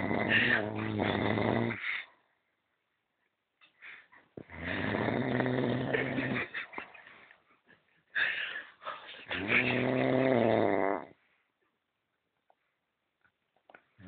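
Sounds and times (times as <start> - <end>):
man snoring: 0.0 - 1.8, 4.5 - 6.4, 9.3 - 11.2.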